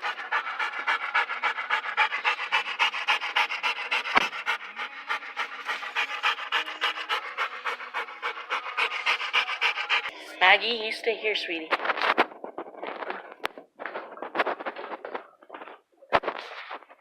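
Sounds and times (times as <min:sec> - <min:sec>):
dog panting: 0:00.0 - 0:10.1.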